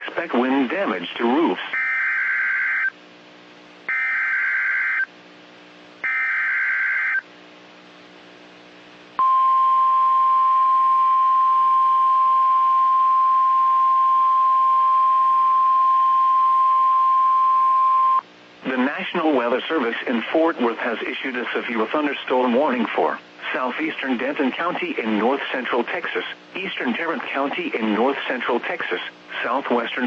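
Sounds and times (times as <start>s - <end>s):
steady high-pitched alarm tone: 3.9s - 5.1s, 6.0s - 7.2s.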